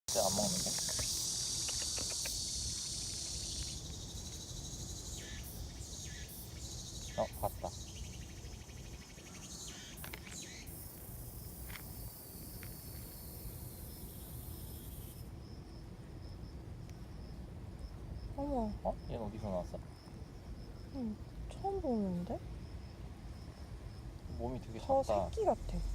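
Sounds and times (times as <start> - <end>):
insects chirring: 0.1 - 25.9
low outdoor rumble: 15.2 - 25.9.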